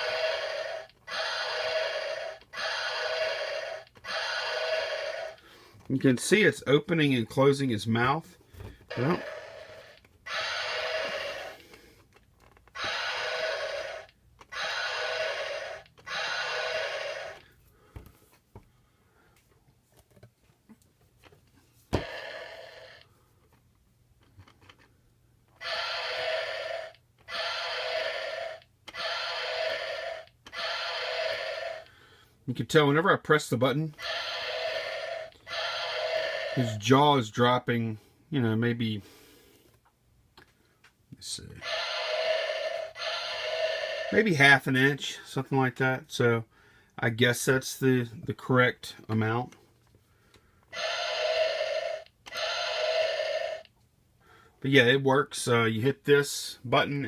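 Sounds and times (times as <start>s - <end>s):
toy dinosaur electronic roar: 0.0s - 5.4s, 8.9s - 11.8s, 12.7s - 17.5s, 22.0s - 23.1s, 25.6s - 31.9s, 33.9s - 36.9s, 41.6s - 44.4s, 50.7s - 53.7s.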